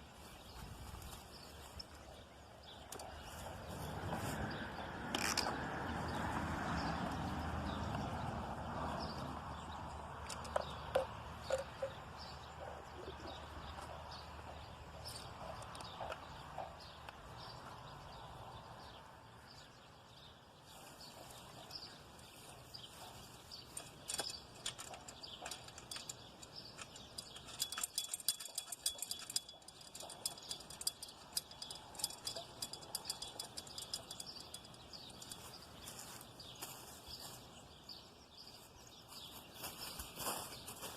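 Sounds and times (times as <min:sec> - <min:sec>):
small clicks and knocks: 0:05.0 - 0:05.8, 0:10.1 - 0:12.0, 0:23.5 - 0:35.6.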